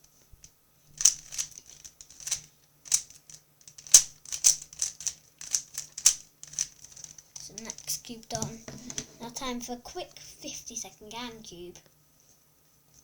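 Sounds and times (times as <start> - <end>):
puzzle cube clicking: 1.0 - 3.2, 3.8 - 9.0.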